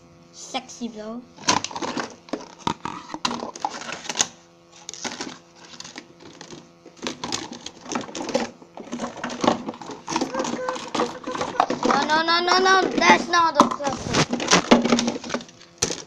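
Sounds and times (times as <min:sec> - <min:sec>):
kitchenware clattering: 0:07.9 - 0:12.1.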